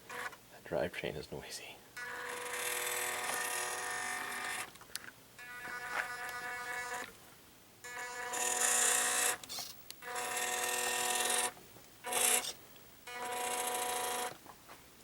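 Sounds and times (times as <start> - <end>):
toy car motor whining: 2.0 - 4.7, 5.4 - 7.1, 7.9 - 14.4.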